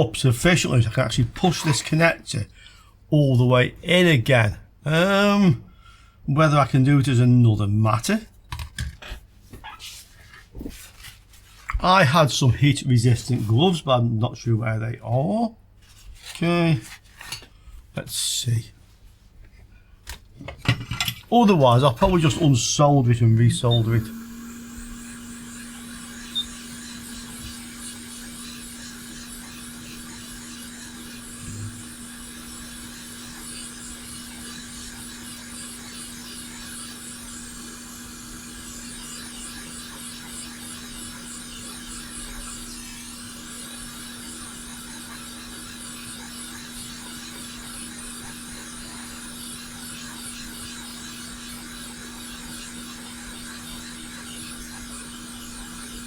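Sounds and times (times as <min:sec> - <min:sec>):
small fan blower humming: 0:21.8 - 0:56.0.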